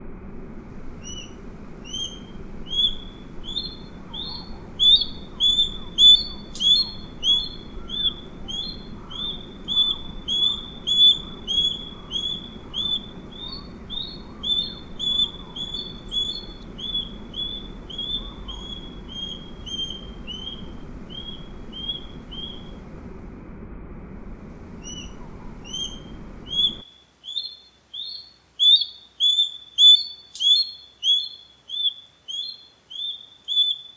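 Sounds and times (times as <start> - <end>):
low background rumble: 0.0 - 26.8
osprey whistled calls: 1.0 - 22.9, 24.8 - 33.9.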